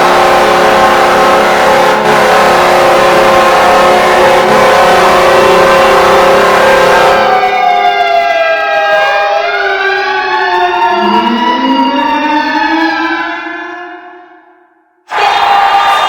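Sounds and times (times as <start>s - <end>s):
arena goal horn blaring: 0.0s - 7.5s.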